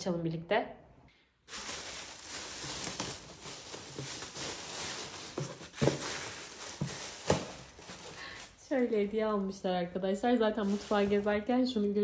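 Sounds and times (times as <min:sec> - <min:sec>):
knocks and rustles of handling: 0:01.5 - 0:09.4.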